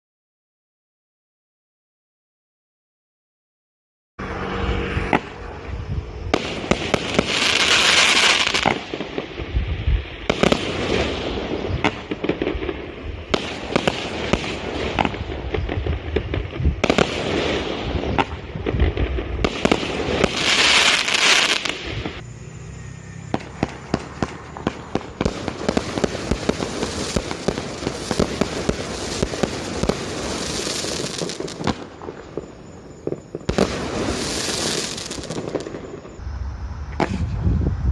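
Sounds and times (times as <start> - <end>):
firework bangs and pops: 6.3 - 22.2, 23.3 - 36.2, 37.0 - 37.3
firework crackling: 6.3 - 22.6, 23.2 - 36.2.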